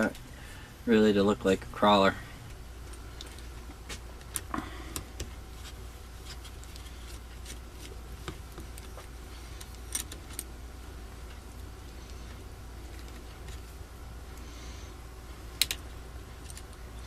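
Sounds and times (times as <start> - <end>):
steady low hum: 0.0 - 17.0
small parts and tools clicking: 6.2 - 10.5, 15.6 - 16.8.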